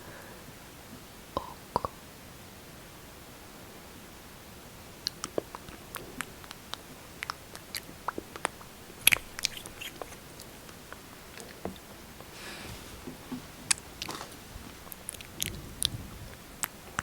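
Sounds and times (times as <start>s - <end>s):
soft breath: 0.0s - 0.7s, 11.3s - 13.6s
lip smacking: 5.0s - 17.0s.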